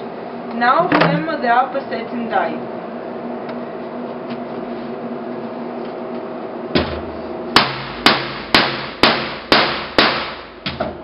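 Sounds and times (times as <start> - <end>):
steady hum: 0.0 - 11.0
hammer striking metal tool: 7.6 - 10.4.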